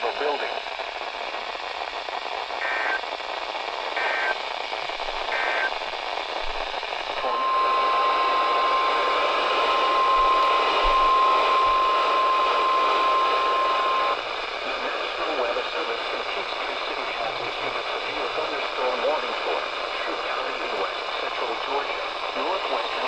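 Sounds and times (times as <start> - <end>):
radio hiss: 0.0 - 23.0
steady warning alarm tone: 7.2 - 14.2.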